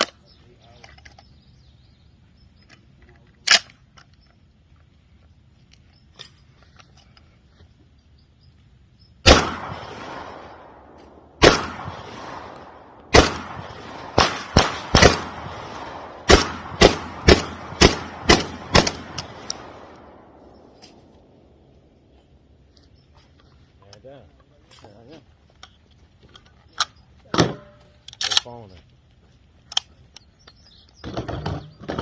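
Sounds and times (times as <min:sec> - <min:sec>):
pistol shots with echo: 0:09.2 - 0:20.8.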